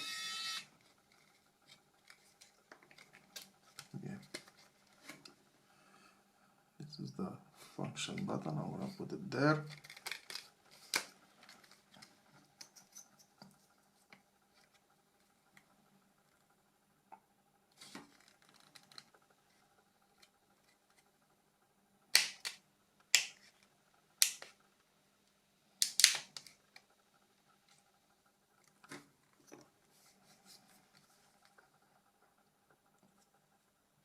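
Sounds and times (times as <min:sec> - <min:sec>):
small plastic parts clicking: 0:09.6 - 0:13.2.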